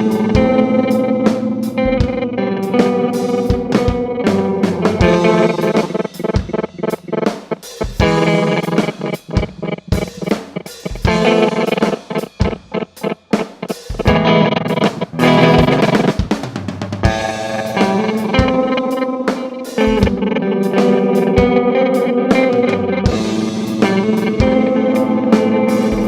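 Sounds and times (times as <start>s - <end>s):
drum kit playing: 0.0s - 26.0s
electric guitar with delay effect: 0.0s - 26.0s.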